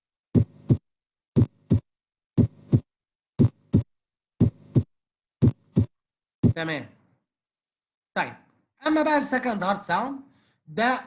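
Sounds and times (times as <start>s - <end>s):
heartbeat lub-dub: 0.3s - 0.8s, 1.4s - 6.7s.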